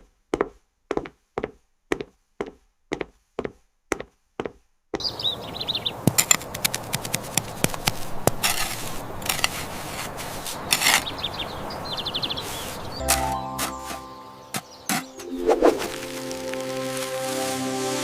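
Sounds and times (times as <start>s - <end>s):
high chirping runs: 5.0s - 9.6s, 10.2s - 16.5s
sharp taps and knocks: 6.0s - 9.6s
music: 13.0s - 18.0s
steady background hiss: 15.7s - 18.0s.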